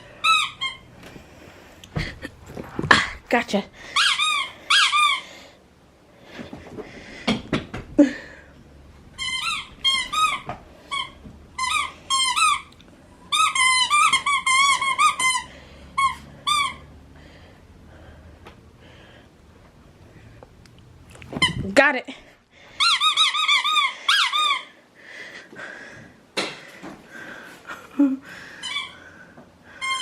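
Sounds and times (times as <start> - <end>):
rubber squeaky toy squeaking: 0.2 - 0.9, 4.0 - 5.2, 9.1 - 12.7, 13.3 - 16.9, 21.3 - 21.8, 22.8 - 24.7, 29.8 - 30.0.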